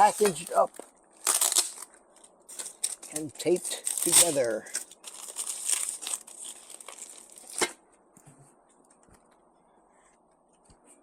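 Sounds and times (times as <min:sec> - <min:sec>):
packaging crinkling: 0:00.0 - 0:07.8.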